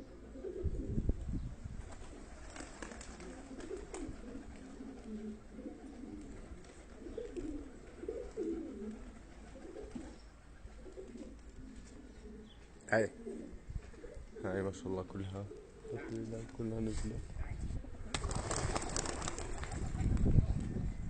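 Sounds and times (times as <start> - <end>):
pigeons cooing: 0.0 - 1.1, 2.0 - 16.3.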